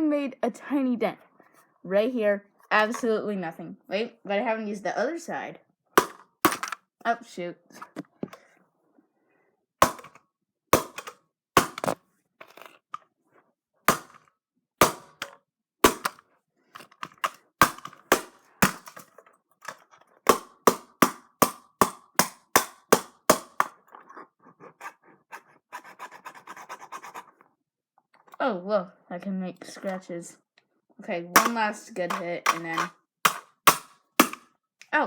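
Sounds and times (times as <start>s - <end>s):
sharp hits on plastic shell: 6.0s - 6.8s, 9.8s - 10.2s, 10.8s - 12.0s, 13.9s - 14.2s, 14.8s - 16.2s, 17.0s - 23.8s, 31.4s - 34.5s.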